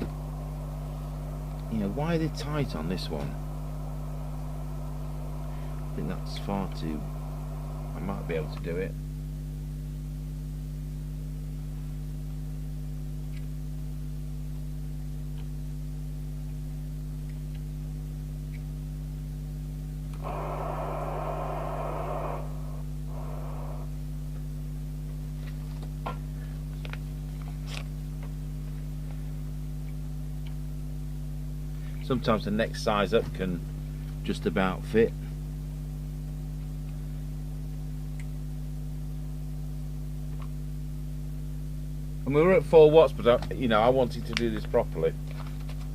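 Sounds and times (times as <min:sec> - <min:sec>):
hiss: 0:00.0 - 0:08.8, 0:20.2 - 0:24.0
air conditioning hum: 0:00.0 - 0:13.1, 0:19.1 - 0:45.9.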